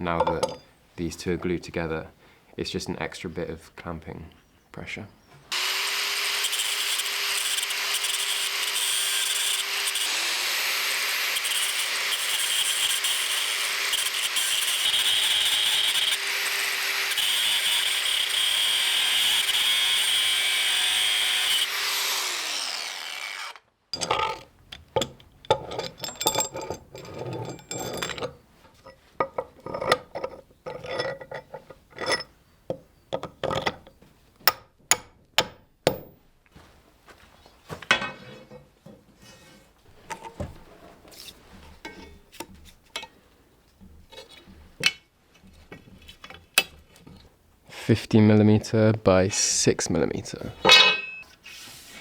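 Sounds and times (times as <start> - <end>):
electric grinder grinding steel: 5.5 - 23.7
metal parts clicking and knocking: 24.0 - 33.9.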